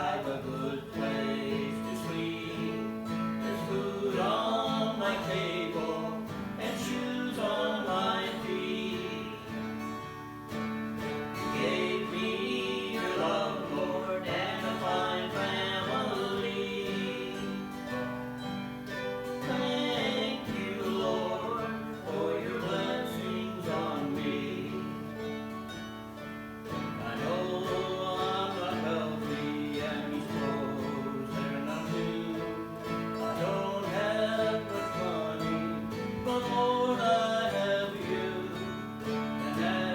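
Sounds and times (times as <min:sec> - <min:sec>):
person singing: 0:00.0 - 0:10.1, 0:11.1 - 0:25.7, 0:26.6 - 0:39.9
acoustic guitar: 0:00.0 - 0:39.9.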